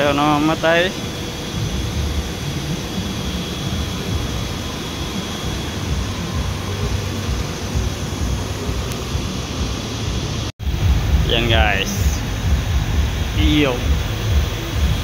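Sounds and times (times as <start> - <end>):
car engine idling: 10.6 - 15.0.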